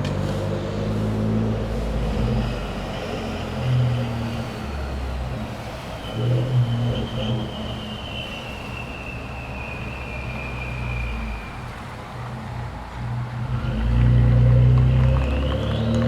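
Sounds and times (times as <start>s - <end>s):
low engine drone: 0.0s - 8.0s, 10.7s - 16.0s
turbo whistle: 5.7s - 11.9s.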